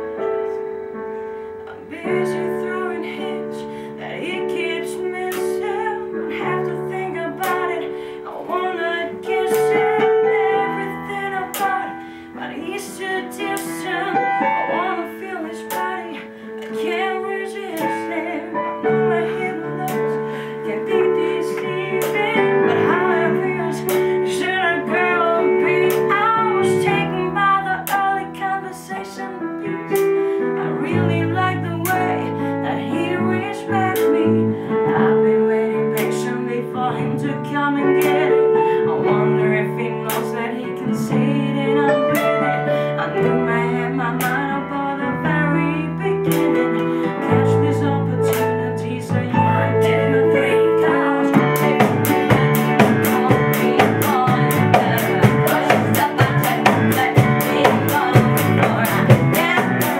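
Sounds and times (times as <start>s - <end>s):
guitar and keyboard melody: 0.0s - 59.9s
fast steady drum beat: 51.4s - 59.9s
sustained bass notes: 51.4s - 59.9s.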